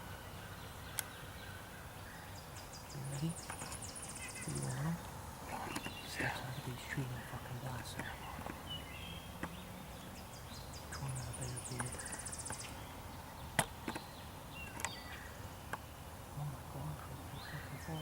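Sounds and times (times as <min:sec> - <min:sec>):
sharp clicks: 0:13.6 - 0:14.1.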